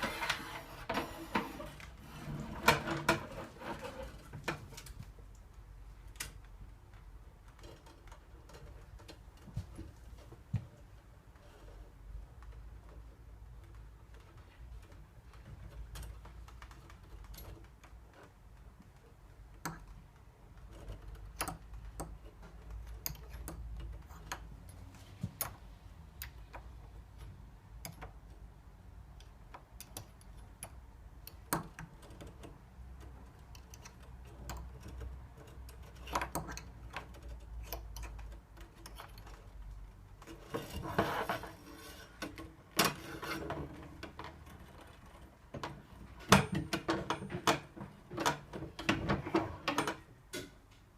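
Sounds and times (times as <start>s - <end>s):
tool clicking and knocking on door: 29.5s - 39.4s, 45.5s - 50.6s.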